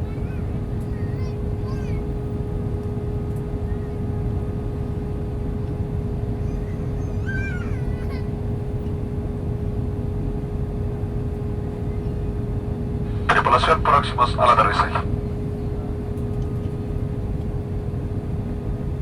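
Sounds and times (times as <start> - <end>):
constant hum: 0.0 - 19.0
aircraft cabin rumble: 10.5 - 19.0.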